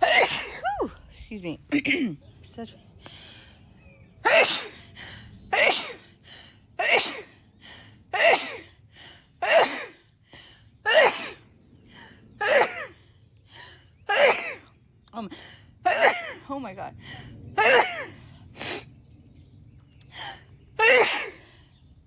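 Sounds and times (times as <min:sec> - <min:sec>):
quick breaths: 0:03.0 - 0:03.9, 0:04.6 - 0:05.4, 0:10.2 - 0:10.8.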